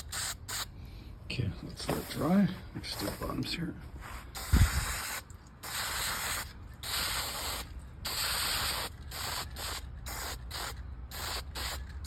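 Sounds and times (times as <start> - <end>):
spray paint can spraying: 0.0 - 0.7, 4.0 - 12.0.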